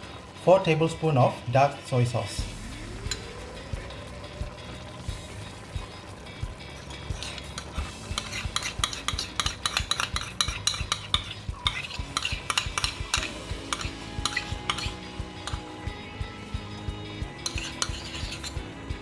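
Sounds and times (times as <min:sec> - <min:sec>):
broth simmering in a pan: 0:00.0 - 0:19.0
utensil clinking and scraping pan: 0:06.7 - 0:15.7, 0:17.4 - 0:18.8.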